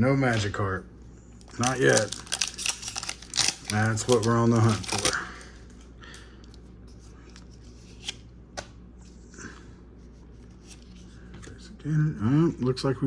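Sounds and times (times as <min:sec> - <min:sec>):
cards sliding and rustling: 0:06.9 - 0:09.2.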